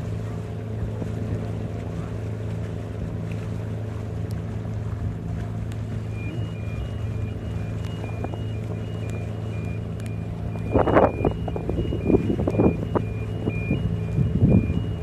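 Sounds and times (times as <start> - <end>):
boat engine running: 0.0 - 15.0
two-pitch electronic beeping: 6.0 - 15.0.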